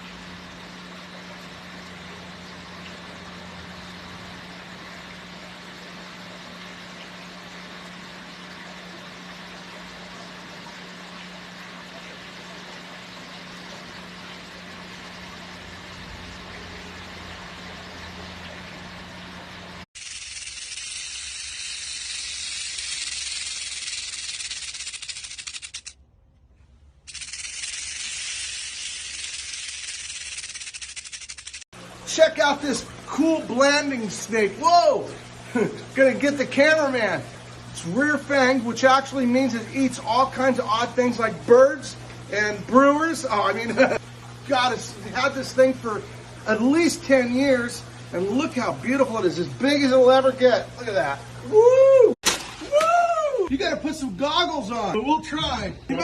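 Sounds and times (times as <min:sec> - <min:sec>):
machine hum: 0:00.0 - 0:56.0
snake hissing: 0:20.0 - 0:25.9, 0:27.1 - 0:31.6.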